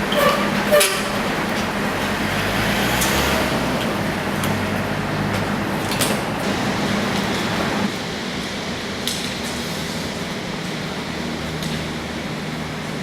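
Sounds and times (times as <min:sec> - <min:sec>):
vehicle engine running: 0:00.0 - 0:07.9
road noise: 0:00.0 - 0:13.0.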